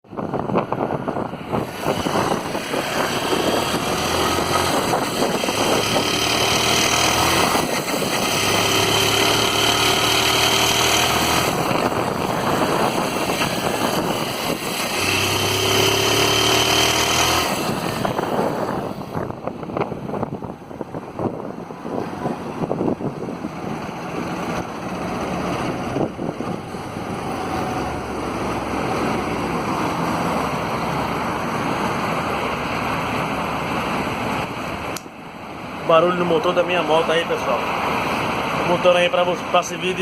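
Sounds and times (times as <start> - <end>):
motorcycle engine revving: 1.4 - 20.0.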